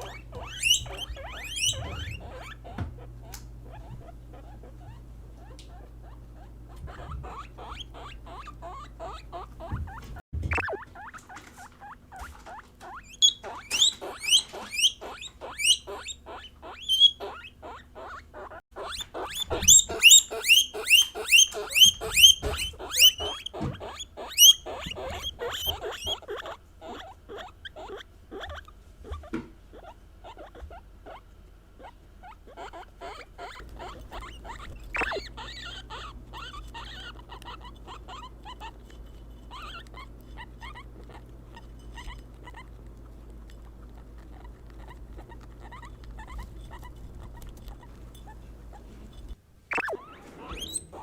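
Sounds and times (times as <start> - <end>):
guinea pigs squeaking: 0.0 - 51.0
low steady hum: 0.0 - 51.0.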